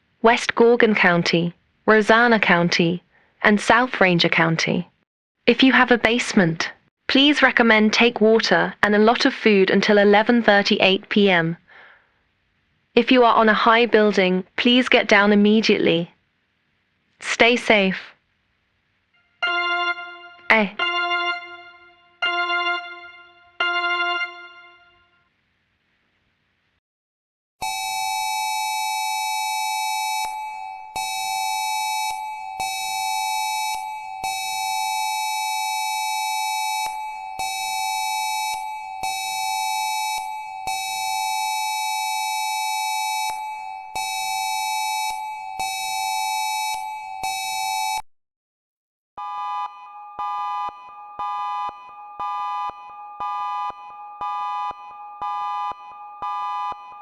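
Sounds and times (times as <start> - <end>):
two-pitch electronic alarm tone: 19.2 - 25.2, 27.6 - 47.7, 49.2 - 57.0
fast repeating electronic beeps: 49.2 - 57.0.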